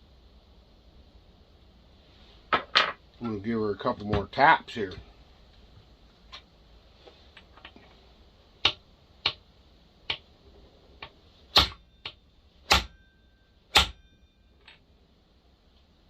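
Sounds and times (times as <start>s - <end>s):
metallic ring: 12.9s - 14.8s
hammer tapping on metal: 13.7s - 14.1s.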